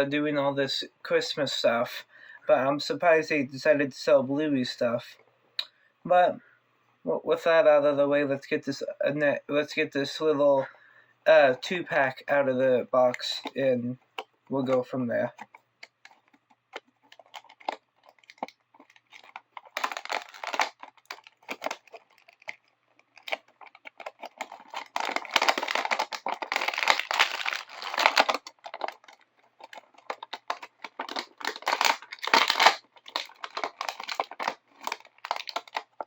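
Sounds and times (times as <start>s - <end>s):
packaging crinkling: 13.1s - 36.0s
packaging tearing: 15.3s - 36.0s
box clicking: 15.4s - 36.0s.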